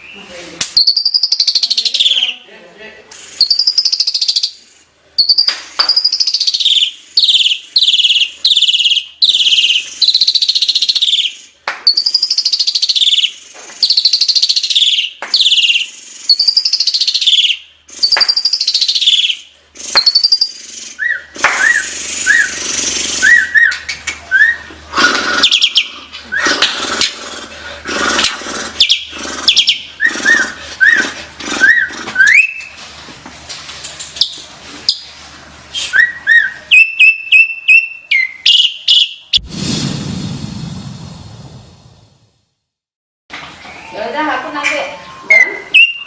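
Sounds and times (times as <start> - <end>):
starling singing whistled notes: 0.8 - 2.4, 3.4 - 4.6, 5.2 - 24.7, 28.8 - 32.7, 35.8 - 39.2, 45.0 - 46.0
rough bird chatter with chirps: 3.3 - 23.8, 24.5 - 32.6.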